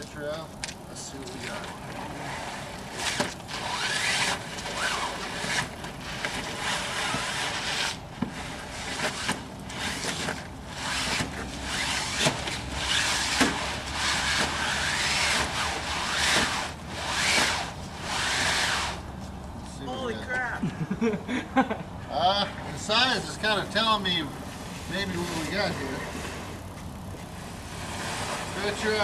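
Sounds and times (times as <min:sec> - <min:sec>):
sailcloth rustling and swishing: 0:01.5 - 0:19.2, 0:24.5 - 0:29.0.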